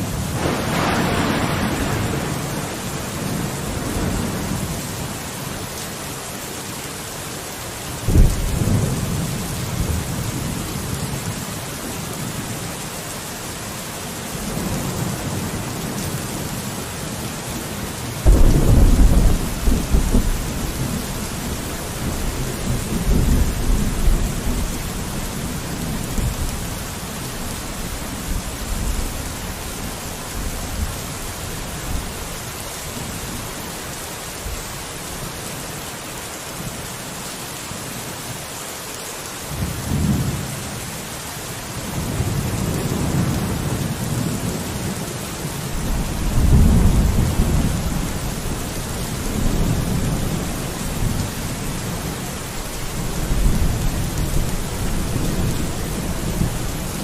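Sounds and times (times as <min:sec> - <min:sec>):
thunder rumbling: 0:00.0 - 0:05.0, 0:08.1 - 0:11.4, 0:18.2 - 0:32.0, 0:45.7 - 0:57.0
rain on a window: 0:00.0 - 0:57.0.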